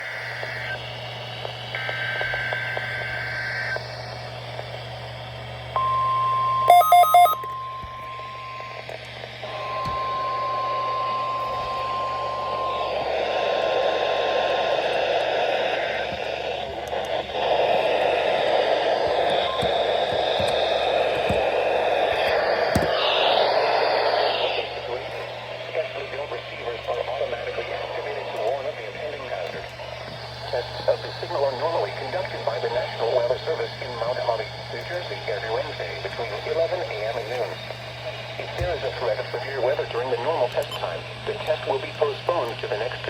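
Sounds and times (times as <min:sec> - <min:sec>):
short loud beeps: 0:05.8 - 0:08.8
warning alarm tone: 0:05.8 - 0:13.4.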